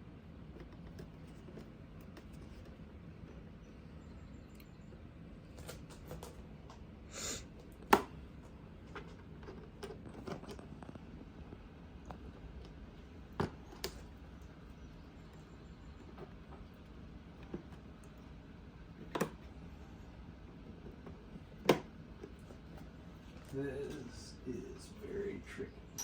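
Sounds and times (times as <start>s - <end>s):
sharp plastic snap: 7.8s - 8.2s.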